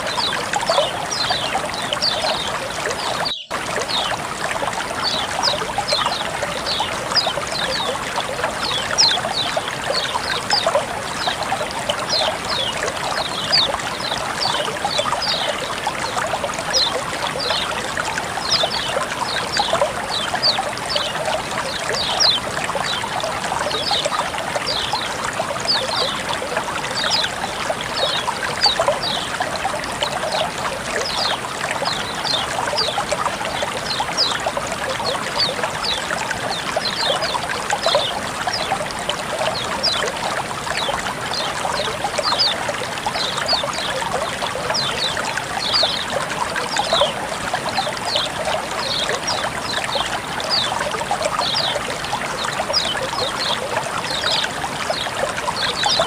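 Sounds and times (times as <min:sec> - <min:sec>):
water trickling and splashing: 0:00.0 - 0:56.0.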